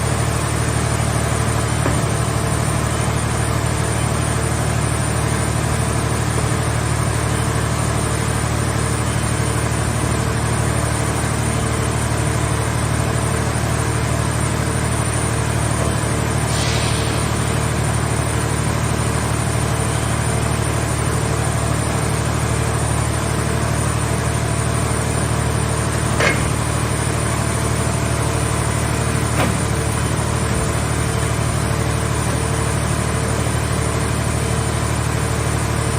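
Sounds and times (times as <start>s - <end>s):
machine engine hum and whine: 0.0s - 35.9s
short hiss: 16.5s - 17.8s
sharp metallic knocks: 26.2s - 26.6s.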